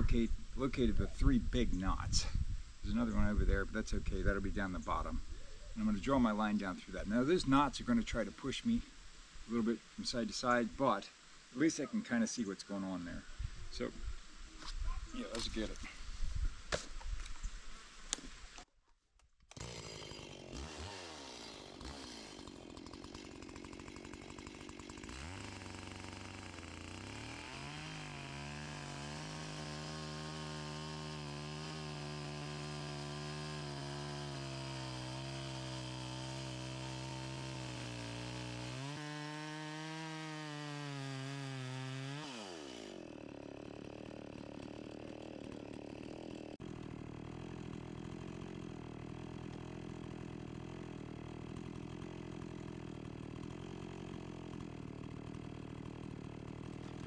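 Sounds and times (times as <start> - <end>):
chainsaw cutting through log: 14.6 - 16.0, 19.4 - 57.0
chainsaw idling: 15.2 - 16.0, 19.5 - 57.0.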